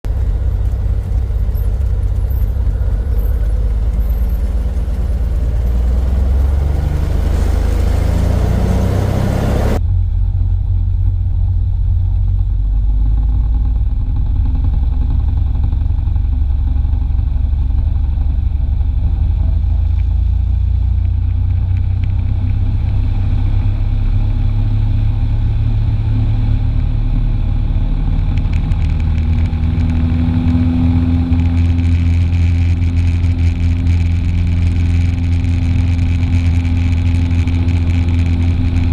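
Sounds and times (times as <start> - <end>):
aircraft engine and propeller: 0.1 - 38.9.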